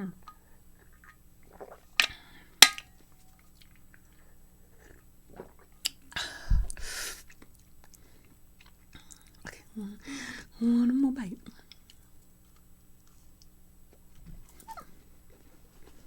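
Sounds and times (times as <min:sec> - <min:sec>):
person chewing cookie: 0:03.4 - 0:09.7.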